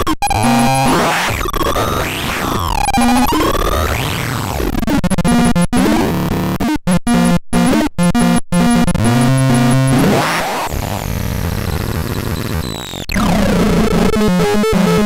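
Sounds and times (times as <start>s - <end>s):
harsh electronic synthesizer tones: 0.0s - 15.0s.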